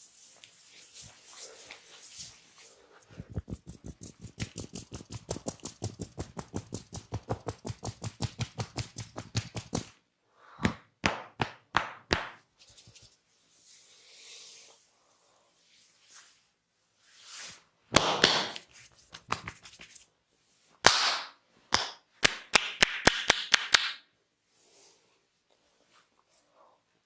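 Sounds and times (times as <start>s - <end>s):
soft brushing hiss: 0.0s - 10.1s, 12.5s - 17.7s, 24.4s - 27.0s
sharp hand slaps: 10.6s - 12.4s, 17.9s - 19.8s, 20.8s - 24.0s.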